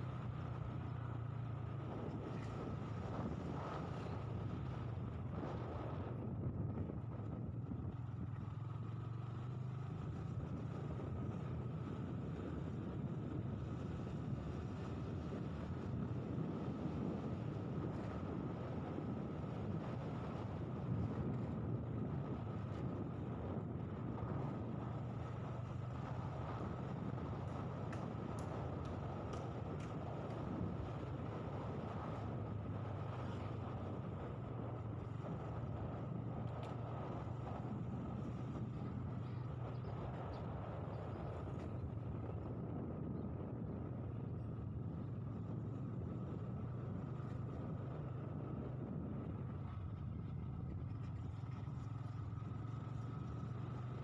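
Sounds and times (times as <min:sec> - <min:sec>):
road noise: 0:00.0 - 0:54.0
vehicle engine rumble: 0:00.0 - 0:54.0
wind buffeting microphone: 0:10.3 - 0:52.6
vehicle engine droning: 0:43.4 - 0:54.0.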